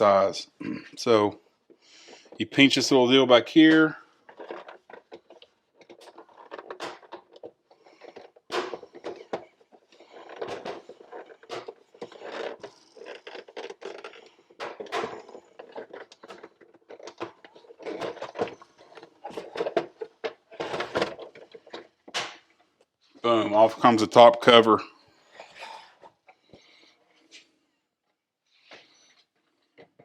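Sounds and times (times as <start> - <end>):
plastic clicks knocks and scrapes: 3.7 - 22.9.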